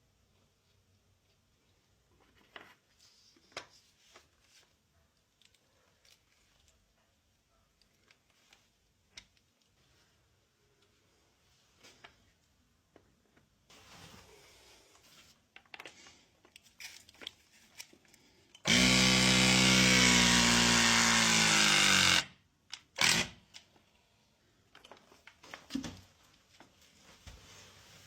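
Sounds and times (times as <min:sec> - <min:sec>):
handheld power tool running: 0:18.6 - 0:22.3, 0:23.0 - 0:23.4.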